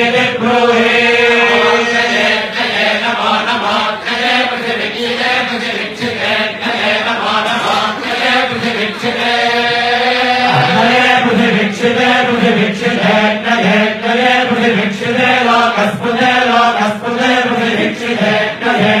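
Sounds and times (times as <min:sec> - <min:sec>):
person chanting: 0:10.3 - 0:13.2.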